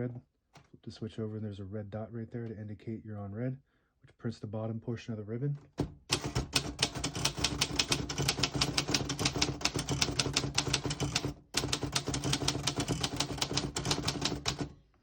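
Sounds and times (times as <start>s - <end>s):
typewriter keys clacking: 6.1s - 14.7s.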